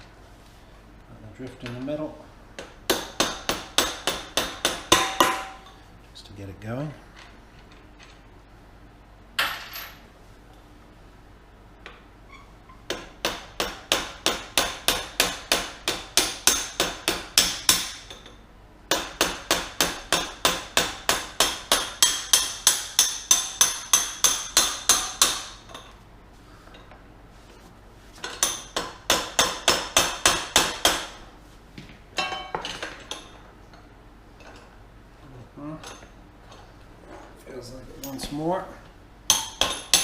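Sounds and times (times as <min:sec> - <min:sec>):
hammer striking metal: 0:02.6 - 0:05.7, 0:12.9 - 0:18.2, 0:18.9 - 0:25.6, 0:28.3 - 0:31.2, 0:39.3 - 0:40.0.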